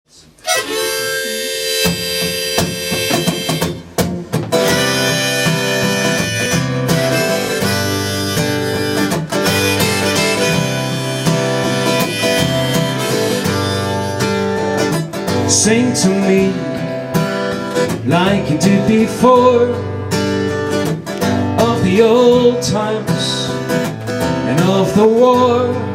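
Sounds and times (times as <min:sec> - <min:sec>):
strummed acoustic guitar: 0:00.2 - 0:25.9
harmonica playing chords and melody: 0:00.4 - 0:15.1.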